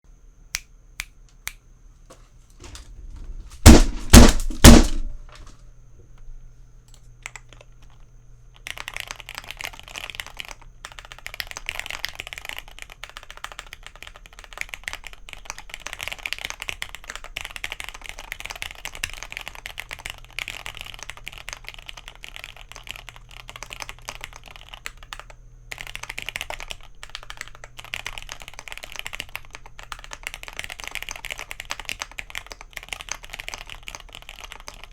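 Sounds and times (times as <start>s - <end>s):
loud hits: 3.6s - 5.3s
fast mechanical keyboard typing: 6.9s - 34.9s.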